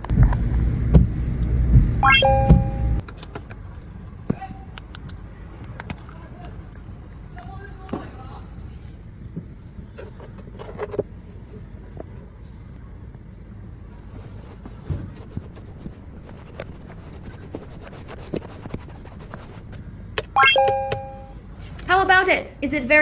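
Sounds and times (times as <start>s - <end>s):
loud pitched tone: 2.0s - 3.0s, 20.4s - 21.4s.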